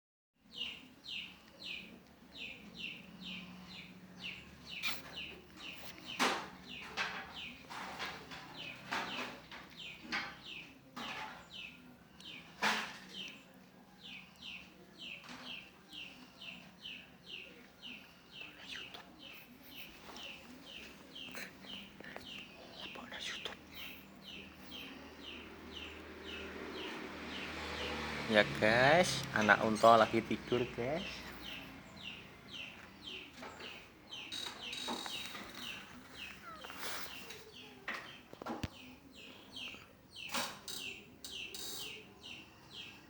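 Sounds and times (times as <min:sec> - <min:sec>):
small bird chirping: 0:00.4 - 0:28.0, 0:29.0 - 0:43.0.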